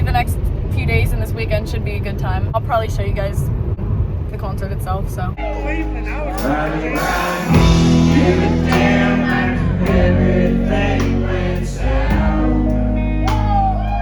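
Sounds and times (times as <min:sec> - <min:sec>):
band music with singer: 0:05.4 - 0:14.0.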